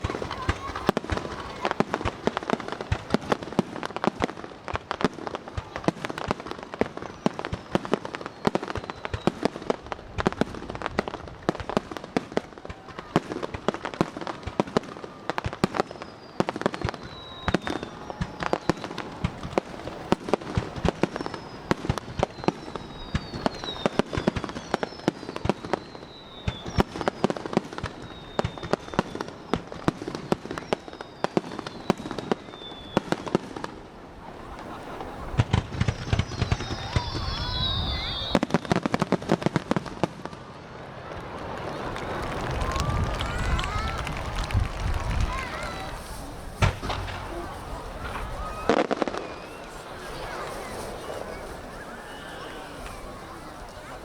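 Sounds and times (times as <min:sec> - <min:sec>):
fireworks bangs and crackling: 0:00.0 - 0:54.0
firework whistles gliding down: 0:06.8 - 0:09.9, 0:14.2 - 0:33.7, 0:34.4 - 0:39.4, 0:41.6 - 0:54.0.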